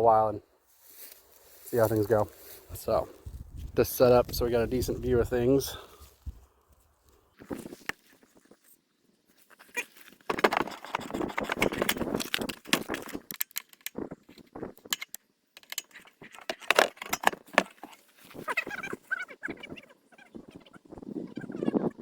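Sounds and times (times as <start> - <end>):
equipment clattering and knocking: 10.3 - 15.9, 16.5 - 17.9.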